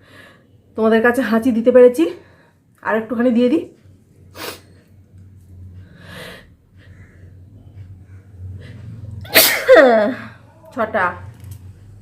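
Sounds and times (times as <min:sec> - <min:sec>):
loud sneeze: 0:09.3 - 0:09.9.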